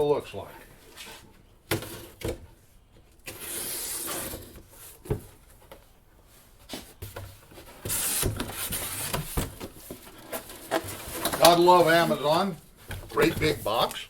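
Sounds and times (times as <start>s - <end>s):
cardboard scraping and rustling: 6.5s - 14.0s.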